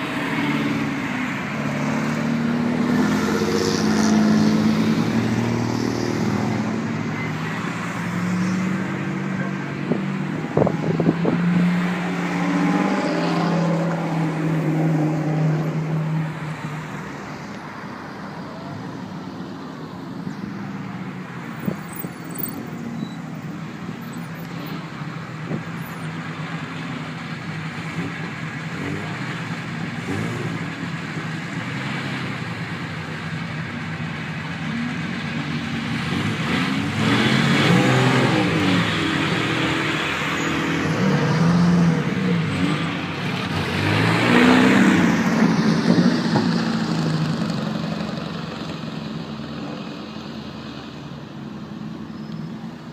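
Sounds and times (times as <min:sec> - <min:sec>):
racing car engines revving past: 0:00.0 - 0:17.3, 0:34.8 - 0:48.9.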